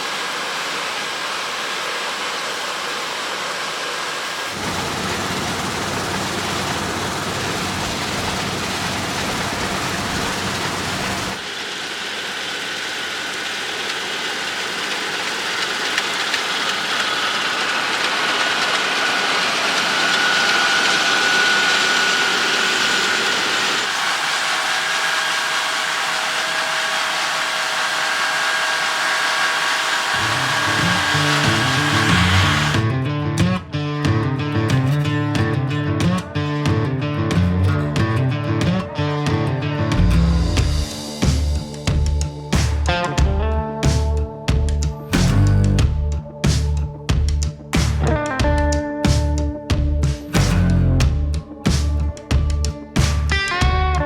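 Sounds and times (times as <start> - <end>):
combine harvester running: 0.0 - 44.1, 45.1 - 46.8, 50.0 - 52.3.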